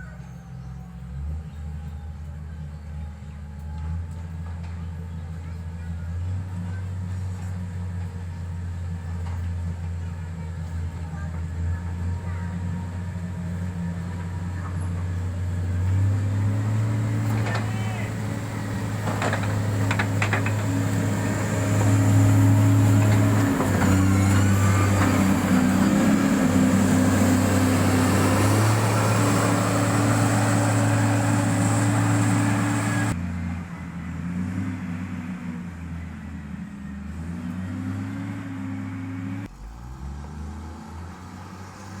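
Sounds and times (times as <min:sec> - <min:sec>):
diesel engine running: 0:00.0 - 0:42.0.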